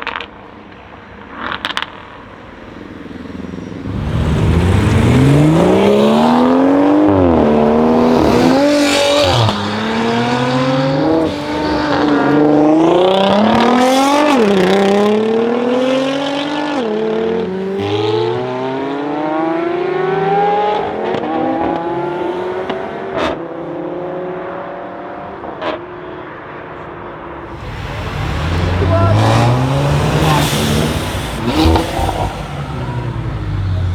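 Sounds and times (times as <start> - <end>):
car engine accelerating: 1.5 - 25.2, 27.4 - 33.9
exhaust pops: 27.5 - 33.9.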